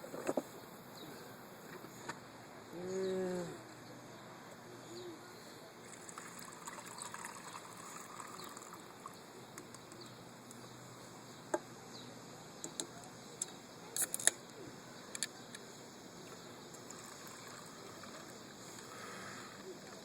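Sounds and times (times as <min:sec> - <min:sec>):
faint bird chirps: 0:02.7 - 0:05.7.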